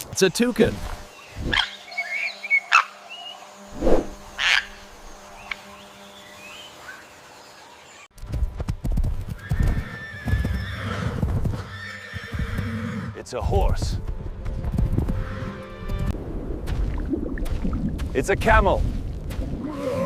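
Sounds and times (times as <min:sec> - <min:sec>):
toucan calls: 0:04.4 - 0:04.8
hooves thudding: 0:08.2 - 0:12.8, 0:13.4 - 0:20.0
horse neighing: 0:09.4 - 0:13.2.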